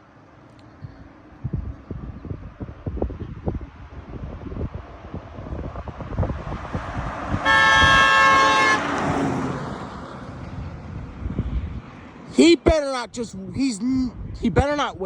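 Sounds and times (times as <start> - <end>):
truck passing on road: 2.0 - 13.1
truck horn: 7.4 - 9.1.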